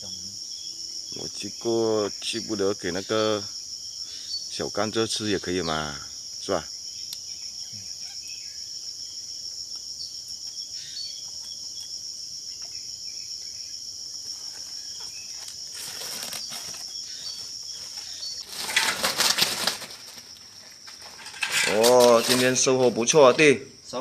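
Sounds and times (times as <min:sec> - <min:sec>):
high-pitched insect chorus: 0:00.0 - 0:24.0
loud rustling and scraping: 0:14.2 - 0:23.0.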